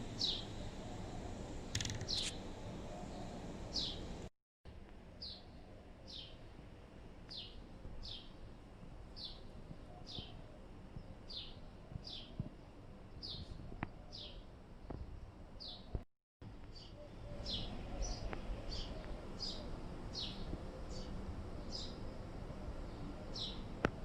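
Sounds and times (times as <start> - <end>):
small bird chirping: 0.2 - 4.1, 9.2 - 12.4.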